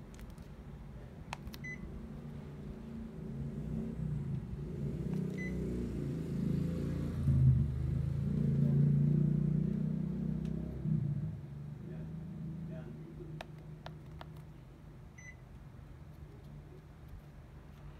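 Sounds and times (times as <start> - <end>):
air conditioner short high beeps: 1.5 - 1.9, 5.4 - 5.6, 15.2 - 15.4.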